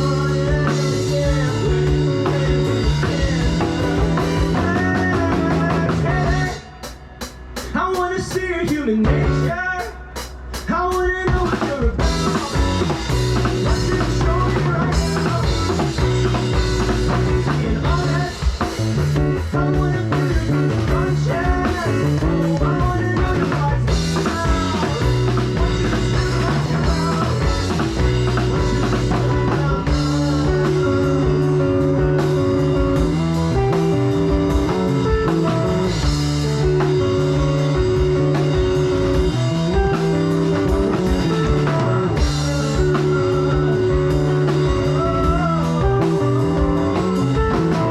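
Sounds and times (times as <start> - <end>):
live rock band playing: 0.0 - 47.9
lead guitar bending notes: 12.0 - 47.9.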